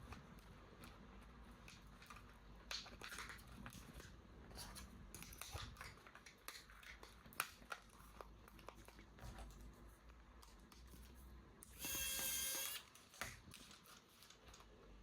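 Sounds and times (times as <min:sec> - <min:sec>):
rustling of toy packaging: 0:12.8 - 0:15.0.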